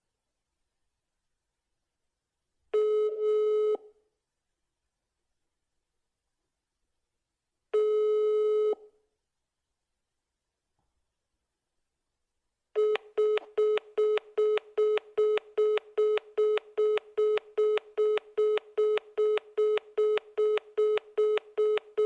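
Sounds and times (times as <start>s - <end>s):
telephone busy beeps: 12.8s - 22.0s.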